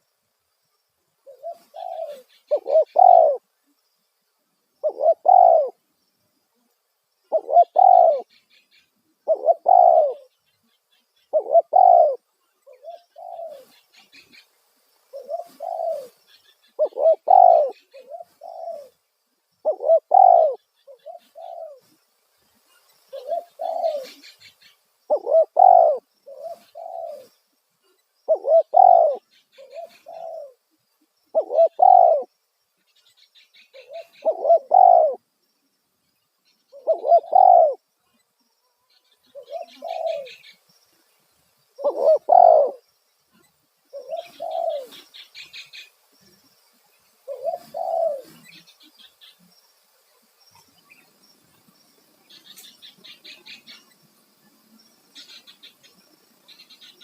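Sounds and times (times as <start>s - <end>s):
dove cooing: 1.2s - 3.4s, 4.8s - 5.8s, 7.3s - 8.4s, 9.2s - 10.3s, 11.3s - 14.4s, 15.1s - 19.0s, 19.6s - 21.9s, 23.1s - 24.5s, 25.1s - 27.4s, 28.3s - 30.6s, 31.3s - 32.3s, 33.7s - 35.2s, 36.7s - 37.8s, 39.3s - 40.6s, 41.8s - 42.8s, 43.9s - 45.8s, 47.2s - 48.7s.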